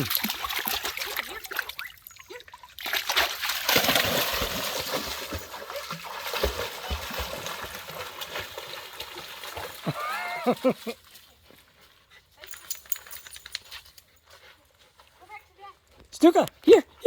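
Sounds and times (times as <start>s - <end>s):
creek water splashing: 0.0s - 11.7s.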